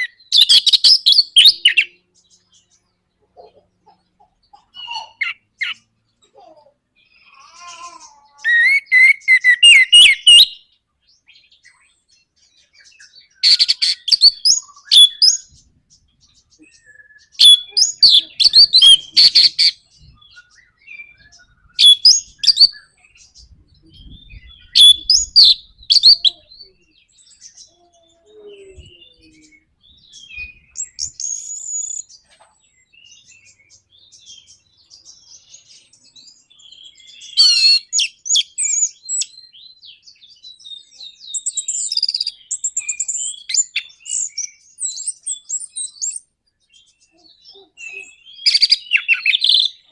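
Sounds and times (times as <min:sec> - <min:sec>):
faint bird calls: 0:00.0 - 0:10.6, 0:12.7 - 0:39.3, 0:47.0 - 0:49.9
thrush chattering song: 0:13.6 - 0:20.3, 0:21.4 - 0:26.9.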